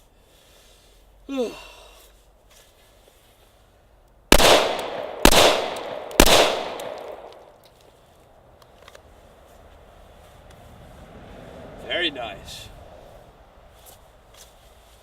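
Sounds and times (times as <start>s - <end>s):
pistol shots with echo: 4.3s - 7.4s.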